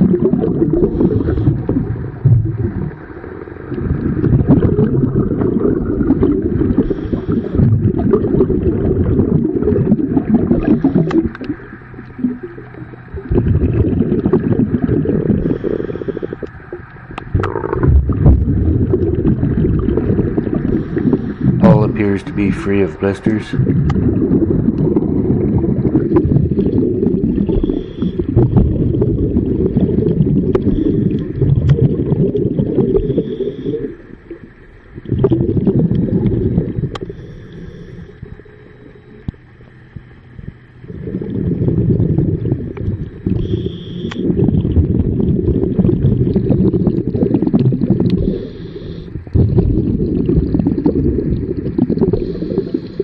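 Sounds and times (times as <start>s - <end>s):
gurgling exhaust bubbles: 0.0s - 53.0s
regulator inhalation hiss: 15.4s - 16.4s, 37.0s - 38.7s, 43.3s - 44.3s, 48.2s - 49.2s, 52.1s - 53.0s.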